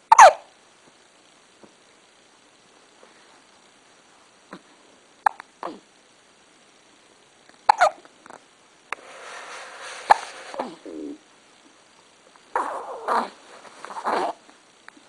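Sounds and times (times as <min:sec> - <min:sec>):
soft rushing noise: 0:08.9 - 0:11.0.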